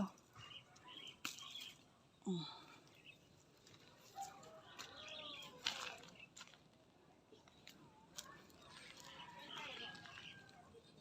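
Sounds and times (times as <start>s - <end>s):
plants rustling: 2.8s - 6.8s.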